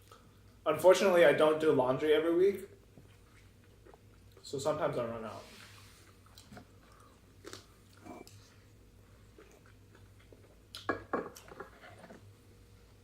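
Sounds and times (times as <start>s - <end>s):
low steady hum: 0.0s - 13.0s
eating sounds: 3.0s - 4.4s, 9.1s - 12.3s.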